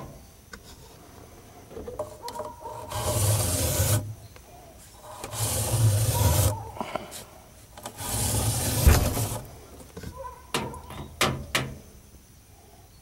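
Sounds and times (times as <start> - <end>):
comb rasping through metal fins: 2.5 - 4.1, 5.0 - 6.8, 7.8 - 9.5.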